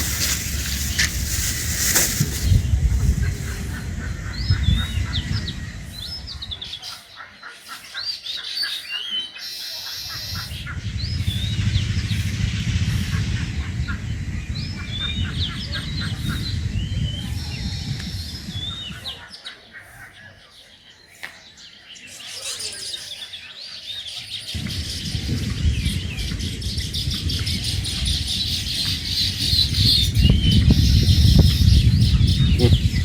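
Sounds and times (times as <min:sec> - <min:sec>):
low rumbling noise: 0:00.0 - 0:06.8, 0:10.0 - 0:19.2, 0:24.5 - 0:33.0
small birds chirping: 0:00.0 - 0:33.0.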